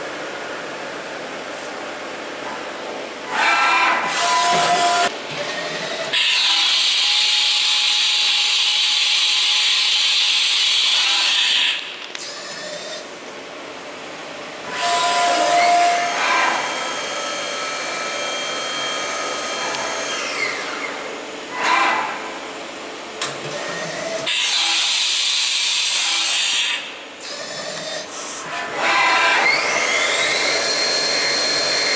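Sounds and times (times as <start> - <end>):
machine motor whine: 14.6 - 22.4, 23.2 - 31.9.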